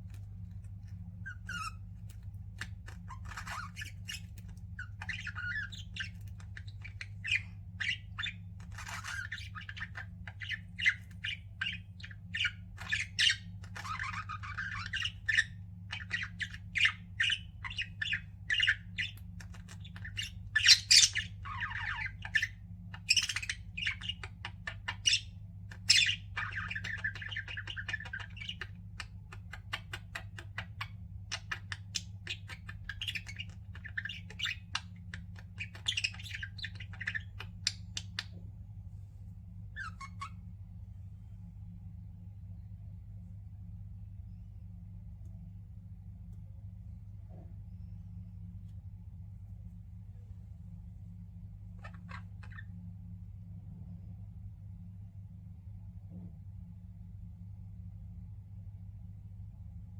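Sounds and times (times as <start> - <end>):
faint low hum: 0.0 - 59.9
budgerigars chattering: 2.6 - 38.4, 51.8 - 52.7.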